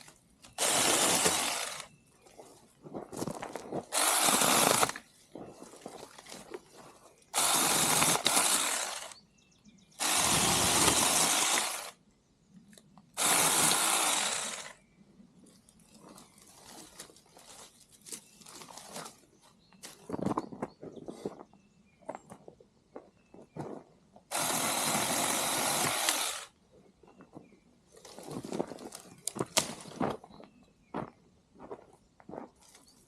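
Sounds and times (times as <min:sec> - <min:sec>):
battery chainsaw cutting branches: 0:00.0 - 0:01.9, 0:03.9 - 0:05.1, 0:07.3 - 0:09.2, 0:10.0 - 0:12.0, 0:13.2 - 0:14.8, 0:24.3 - 0:26.6
brush crackling: 0:00.0 - 0:09.2, 0:13.2 - 0:14.8, 0:15.5 - 0:20.3, 0:27.9 - 0:30.2.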